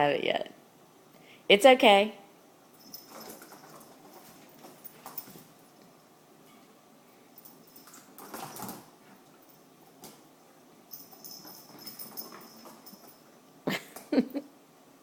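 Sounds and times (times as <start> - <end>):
toy rustling: 2.8 - 5.8, 10.9 - 13.3.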